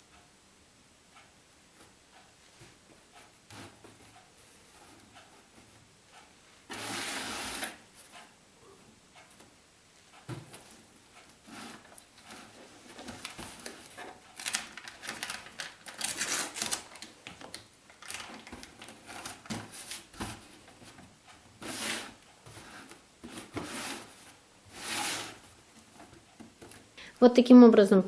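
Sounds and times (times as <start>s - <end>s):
cardboard rustling and scraping: 1.8s - 5.8s, 6.7s - 8.3s, 10.2s - 27.0s.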